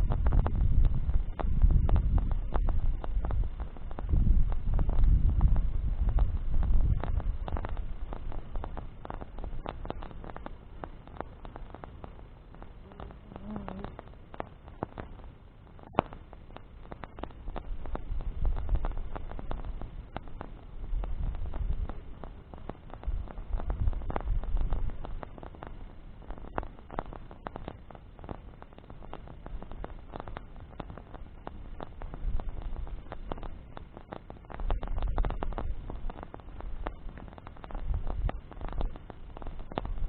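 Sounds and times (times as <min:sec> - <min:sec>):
low rumbling: 0:00.0 - 0:10.6
bonfire crackling and popping: 0:00.0 - 0:40.0.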